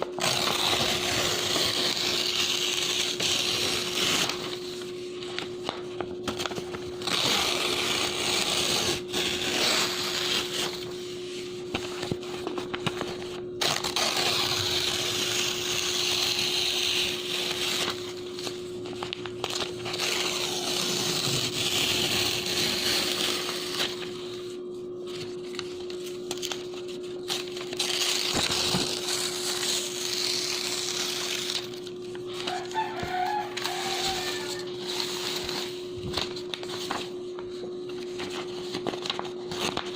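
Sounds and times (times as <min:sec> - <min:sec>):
paper tearing: 0:00.0 - 0:11.1, 0:11.7 - 0:24.5, 0:25.5 - 0:37.1, 0:37.9 - 0:39.9
rooster crowing faintly: 0:32.4 - 0:34.8.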